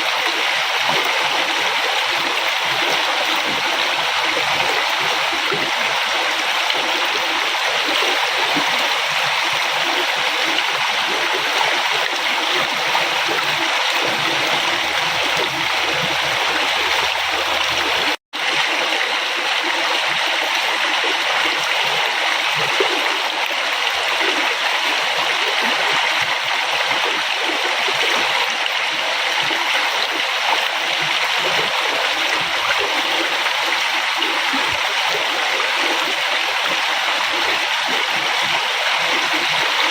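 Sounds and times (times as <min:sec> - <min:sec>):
river flowing: 0:00.0 - 0:25.6.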